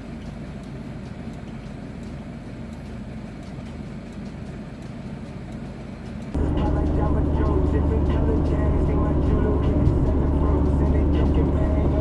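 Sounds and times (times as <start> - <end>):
faint ticks: 0.1 - 6.4
road traffic rumble: 6.2 - 12.0.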